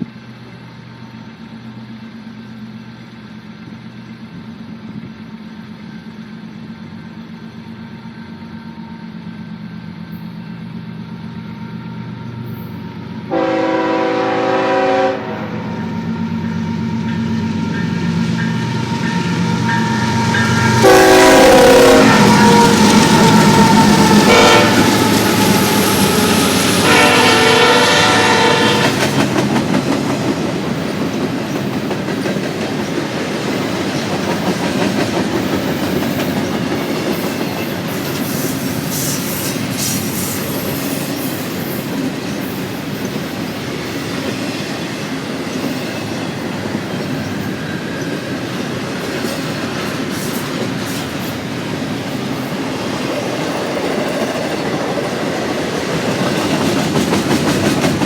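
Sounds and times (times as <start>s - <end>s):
train horn blast: 11.8s - 29.3s
freight cars rumbling and clacking: 15.9s - 58.0s.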